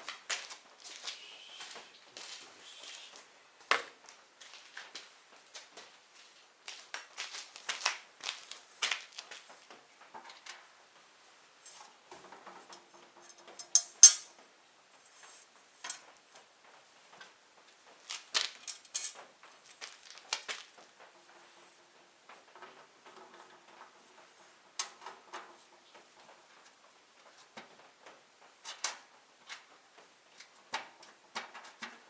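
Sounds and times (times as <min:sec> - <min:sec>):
metal hardware clinking: 0:13.0 - 0:14.3
loud metal clank: 0:13.8 - 0:14.3.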